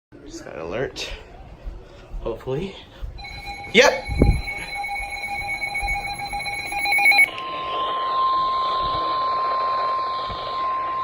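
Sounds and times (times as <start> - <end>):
steady warning alarm tone: 3.0 - 7.4
buzzy digital data burst: 3.2 - 7.3.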